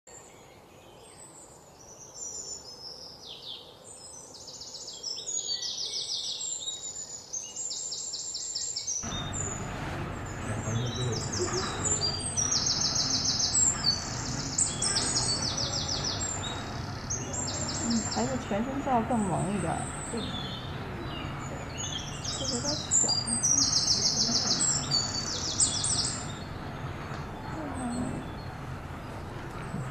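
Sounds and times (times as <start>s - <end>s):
small birds singing: 0.1s - 29.9s
steady background noise: 9.0s - 29.9s.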